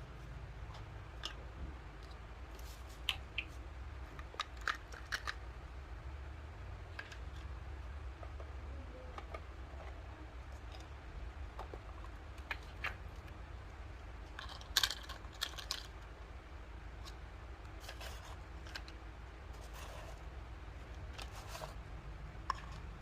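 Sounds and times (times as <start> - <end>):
plastic toy pieces clicking: 4.2 - 5.4, 14.3 - 16.1.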